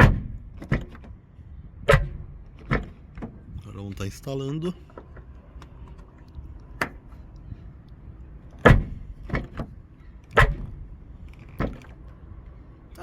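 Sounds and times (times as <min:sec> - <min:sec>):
car door shutting thud: 0:00.0 - 0:01.1, 0:01.9 - 0:03.4, 0:08.6 - 0:09.7, 0:10.3 - 0:10.8.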